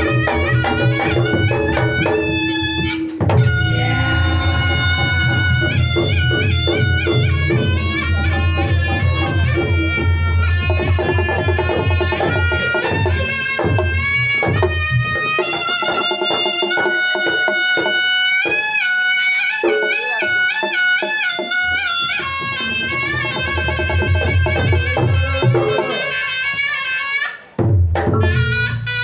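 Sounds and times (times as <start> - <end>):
heavy low drumming: 0.0 - 15.3
shawm playing ornamented melody: 0.0 - 29.0.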